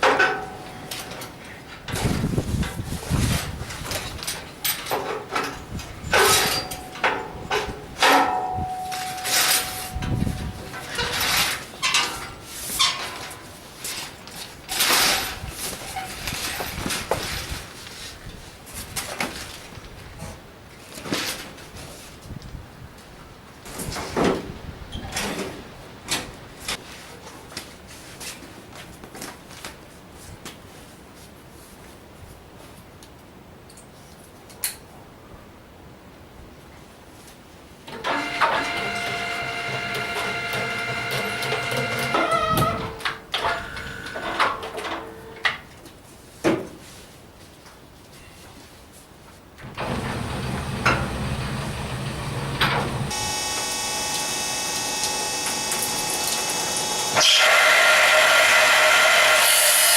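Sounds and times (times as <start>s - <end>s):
diamond saw cutting stone: 53.1s - 59.9s.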